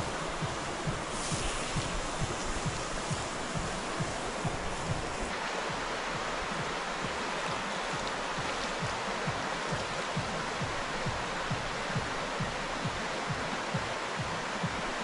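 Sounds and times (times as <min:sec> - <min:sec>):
river water rushing: 0:00.0 - 0:15.0
soft low thumps: 0:00.0 - 0:15.0.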